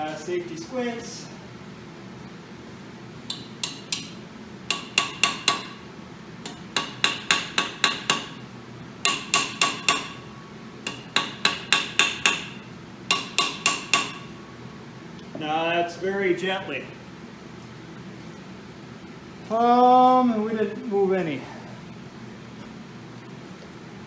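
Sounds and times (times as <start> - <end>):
hammer striking steel: 3.3 - 14.4.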